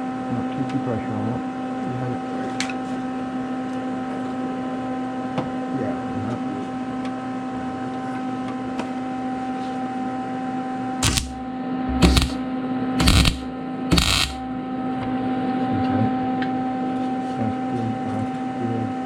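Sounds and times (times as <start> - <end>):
electrical hum: 0.0 - 19.0
power tool bursts on sheet metal: 11.0 - 11.4, 12.0 - 12.4, 13.0 - 14.4.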